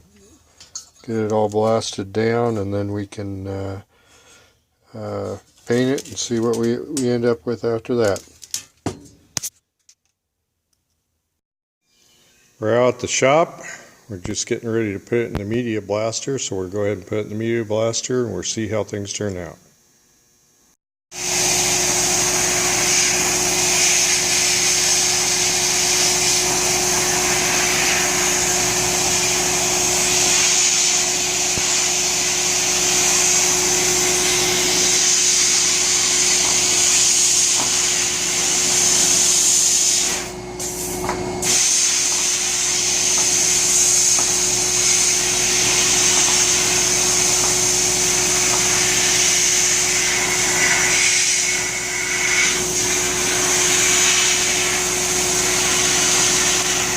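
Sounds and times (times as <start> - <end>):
blast air hissing: 21.2 - 56.9.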